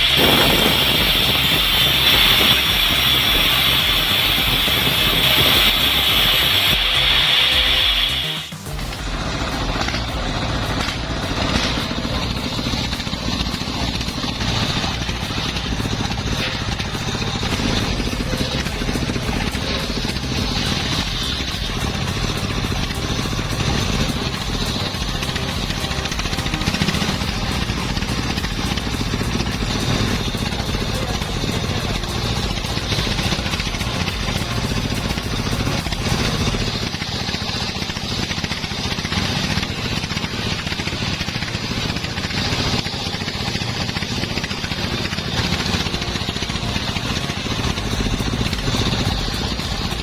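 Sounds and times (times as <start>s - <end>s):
wood-cutting machine running: 0.0s - 50.0s.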